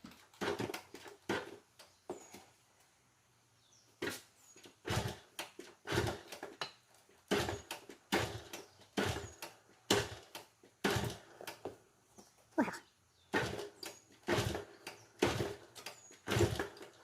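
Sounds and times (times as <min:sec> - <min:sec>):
motorcycle engine kick-started: 0:00.0 - 0:02.0, 0:04.0 - 0:11.8, 0:13.2 - 0:17.0.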